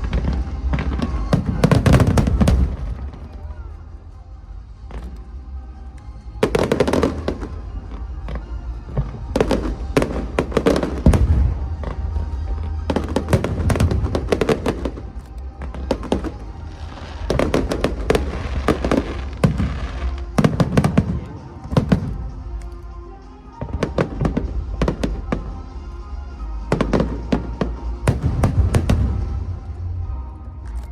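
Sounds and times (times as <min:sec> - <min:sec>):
fireworks bangs: 0:00.0 - 0:03.7, 0:06.4 - 0:22.6, 0:26.7 - 0:30.3
background music: 0:00.0 - 0:30.9.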